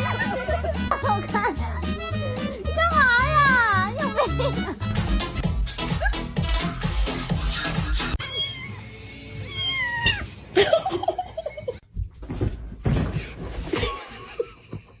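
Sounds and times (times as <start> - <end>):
cat meowing: 8.2 - 10.4.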